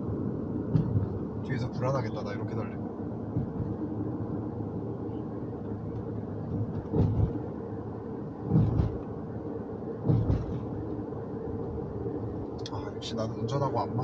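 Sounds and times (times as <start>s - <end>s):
car cabin road and engine drone: 0.0s - 14.0s
short low thumps: 3.3s - 3.9s, 8.5s - 9.0s, 10.0s - 10.8s.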